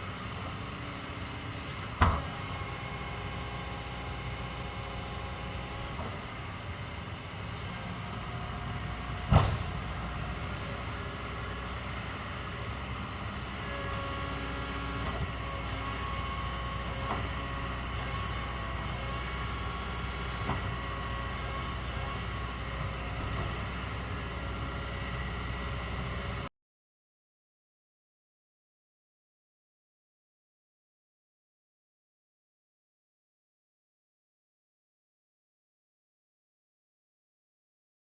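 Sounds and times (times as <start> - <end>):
excavator diesel engine running: 0.0 - 26.5.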